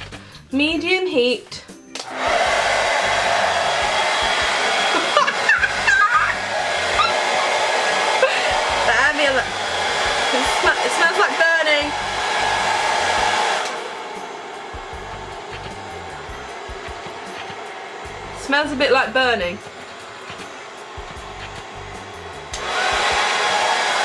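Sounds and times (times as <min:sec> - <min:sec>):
hairdryer blowing air: 0:02.0 - 0:24.0
wavering squeaks: 0:13.8 - 0:22.6.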